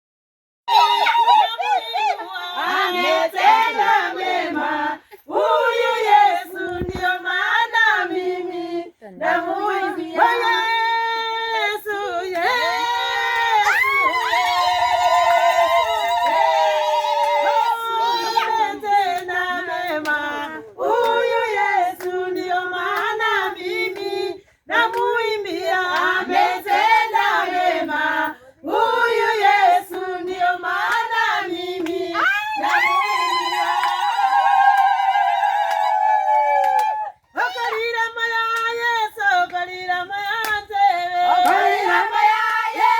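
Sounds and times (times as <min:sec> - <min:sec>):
group singing in chorus: 0:02.2 - 0:42.9
low thump: 0:06.7 - 0:07.2.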